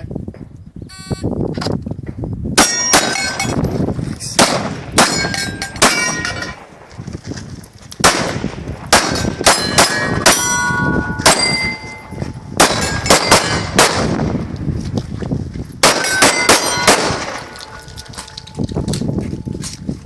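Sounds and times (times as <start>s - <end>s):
pistol shots: 2.6s - 3.6s, 4.4s - 6.8s, 8.0s - 12.0s, 12.6s - 14.3s, 15.8s - 18.0s
steel plates ringing: 2.6s - 3.6s, 5.1s - 6.6s, 9.2s - 13.7s, 15.9s - 18.6s.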